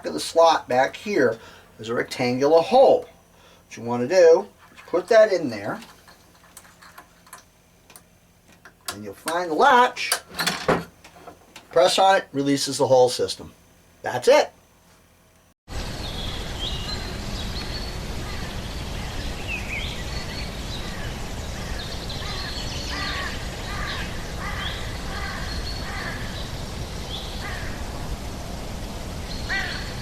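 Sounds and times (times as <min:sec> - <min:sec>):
birds calling: 0:16.0 - 0:28.1, 0:29.1 - 0:30.0.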